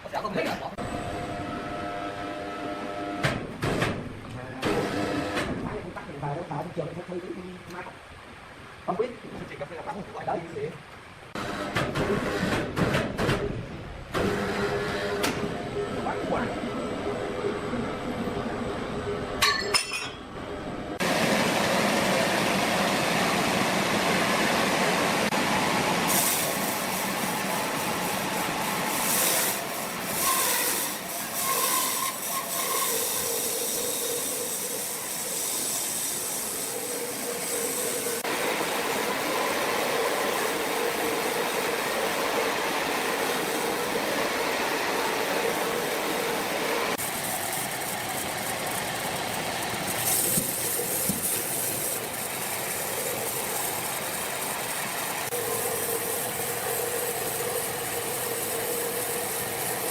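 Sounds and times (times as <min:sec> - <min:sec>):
sawmill saw whirring: 0:20.4 - 0:59.9.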